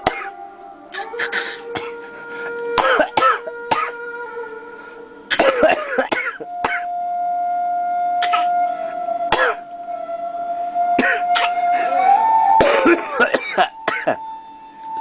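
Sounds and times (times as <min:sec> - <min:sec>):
baby making pretend coughs: 0:00.0 - 0:00.4, 0:02.8 - 0:03.9, 0:08.2 - 0:08.5.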